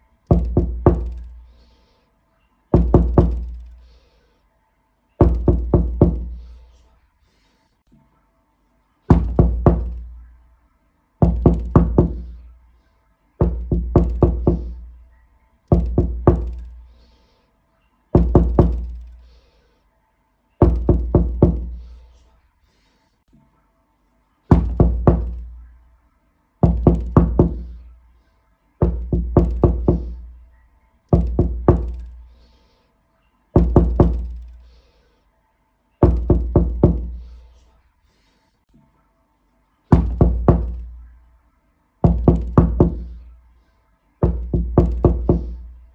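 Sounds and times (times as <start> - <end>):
deep knocking on a door: 0.3 - 1.4, 2.8 - 3.6, 5.2 - 6.4, 9.1 - 10.2, 11.2 - 12.4, 13.4 - 14.9, 15.7 - 16.8, 18.2 - 19.1, 20.6 - 21.8, 24.5 - 25.6, 26.6 - 27.8, 28.8 - 30.3, 31.2 - 32.2, 33.6 - 34.5, 36.0 - 37.2, 39.9 - 41.0, 42.0 - 43.2, 44.2 - 45.7.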